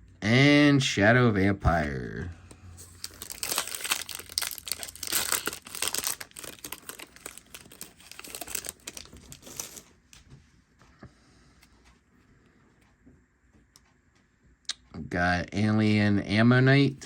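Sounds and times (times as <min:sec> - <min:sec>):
foil wrapper crinkling and tearing: 0:02.8 - 0:09.9.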